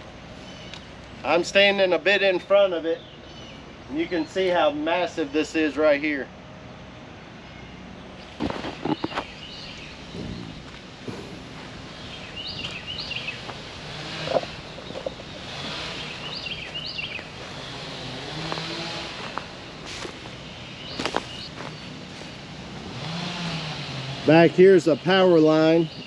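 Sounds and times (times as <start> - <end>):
bird singing: 0.4 - 1.7, 2.5 - 5.8, 7.2 - 22.3, 24.4 - 26.0
steady low hum: 3.0 - 24.3
footsteps and knocks: 10.1 - 12.8.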